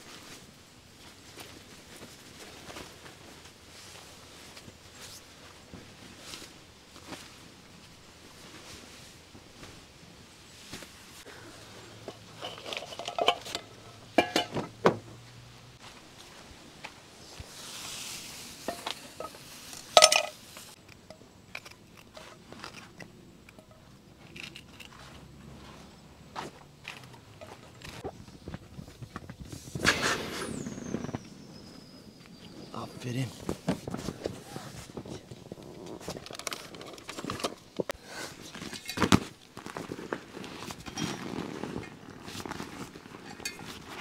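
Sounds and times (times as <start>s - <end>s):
rustling: 0.0s - 44.0s
small objects clicking and clinking: 18.7s - 25.0s.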